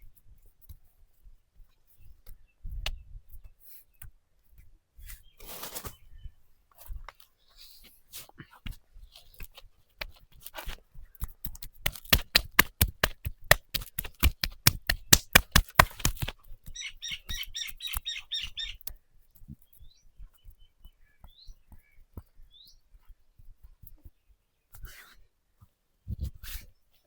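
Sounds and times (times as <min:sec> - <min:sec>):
hand strikes on body: 0:11.8 - 0:16.4
bird chirping: 0:16.7 - 0:23.4.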